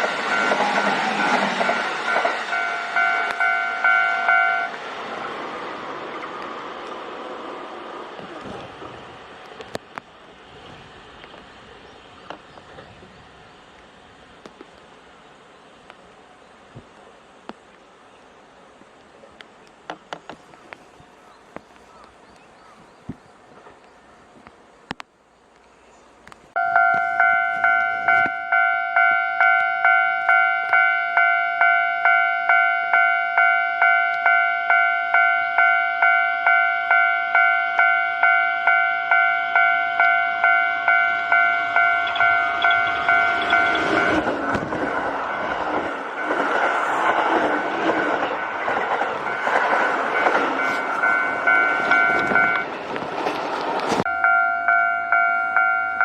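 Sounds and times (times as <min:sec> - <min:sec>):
electric train rushing past: 0:00.0 - 0:17.2, 0:26.6 - 0:56.0
level crossing bell ringing: 0:02.5 - 0:04.7, 0:26.6 - 0:44.2, 0:54.1 - 0:56.0.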